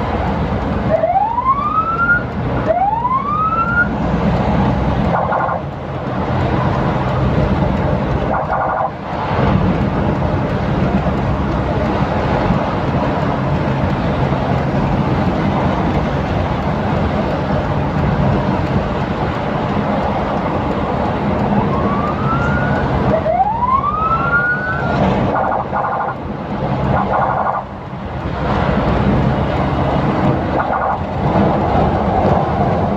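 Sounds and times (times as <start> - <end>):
engine and road noise: 0.0 - 32.9
vehicle siren: 0.8 - 4.0, 5.0 - 5.8, 8.2 - 9.0, 21.4 - 27.8, 30.4 - 31.2.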